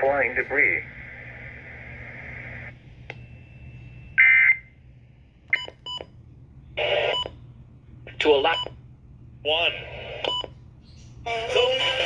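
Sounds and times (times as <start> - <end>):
steady radio hiss: 0.0 - 2.9, 6.8 - 7.2, 8.0 - 8.7, 9.4 - 10.4.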